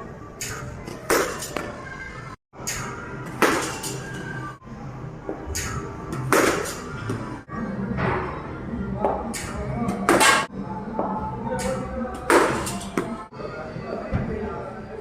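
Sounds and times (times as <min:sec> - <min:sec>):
background music: 0:02.6 - 0:15.0.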